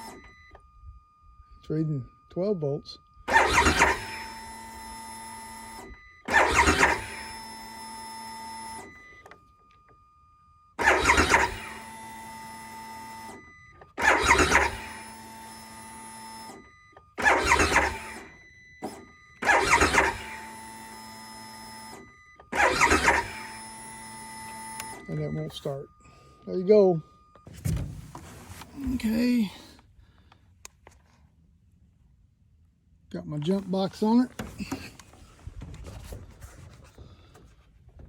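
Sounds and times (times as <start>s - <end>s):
motorcycle engine cranking: 3.3s - 4.1s, 6.3s - 7.1s, 10.8s - 11.7s, 17.2s - 18.0s, 19.4s - 20.2s, 22.6s - 23.5s.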